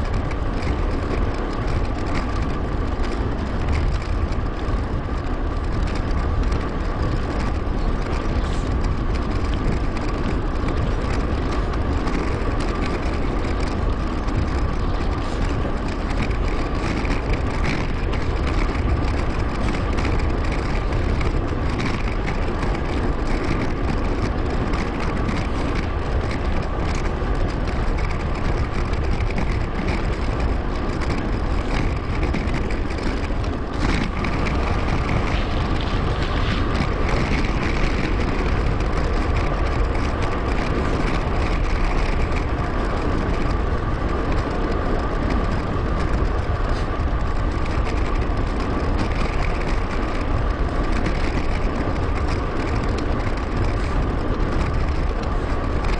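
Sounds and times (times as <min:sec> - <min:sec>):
bike tyre rumble: 0:00.0 - 0:55.9
wind rush: 0:00.0 - 0:55.9.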